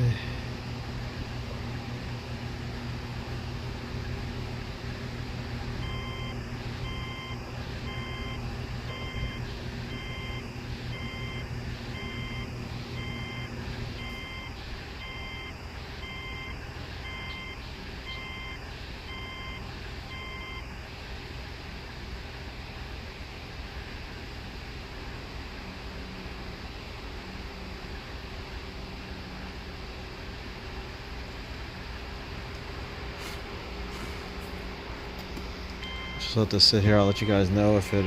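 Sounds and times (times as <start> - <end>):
electronic beeper: 5.8 - 20.6, 35.8 - 38.0.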